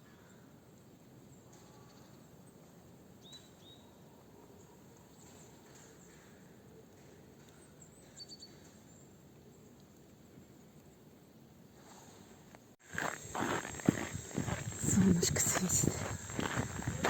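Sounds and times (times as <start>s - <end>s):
small birds chirping: 3.2s - 4.0s.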